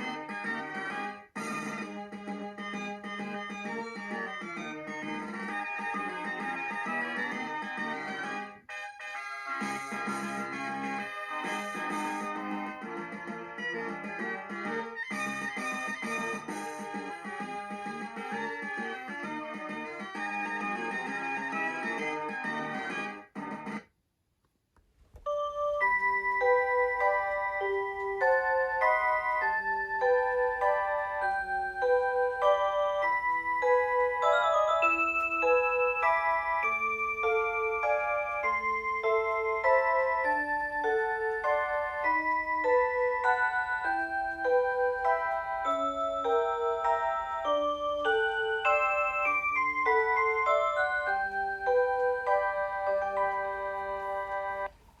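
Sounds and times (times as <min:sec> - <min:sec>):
alarm clock electronic melody: 0:02.6 - 0:08.5, 0:25.3 - 0:54.7.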